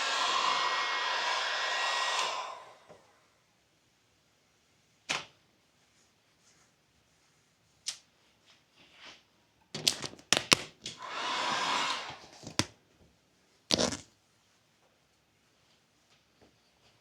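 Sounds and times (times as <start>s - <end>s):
rushing hiss: 0.0s - 3.0s.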